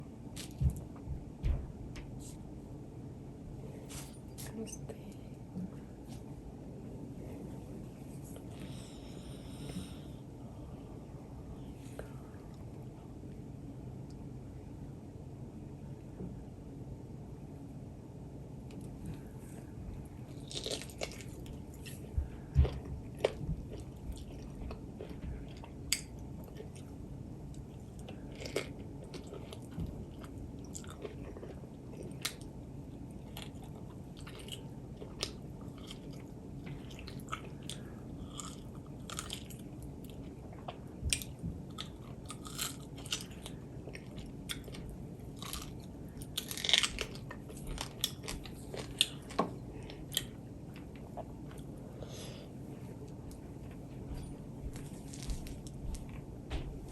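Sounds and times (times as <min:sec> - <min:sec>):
person chewing and biting food: 0:20.2 - 0:51.7.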